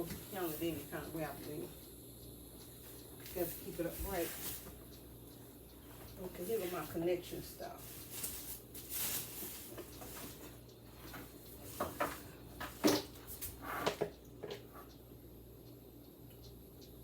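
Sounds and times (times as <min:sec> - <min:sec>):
light rustling: 0:05.9 - 0:14.0.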